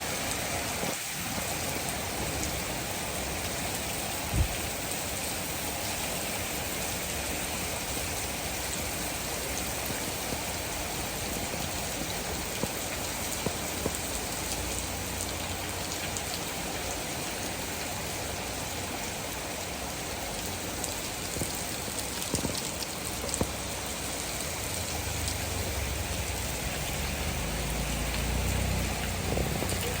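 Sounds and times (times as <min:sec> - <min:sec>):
rain falling: 0:00.0 - 0:30.0
raindrops tapping: 0:08.2 - 0:17.5, 0:20.8 - 0:30.0.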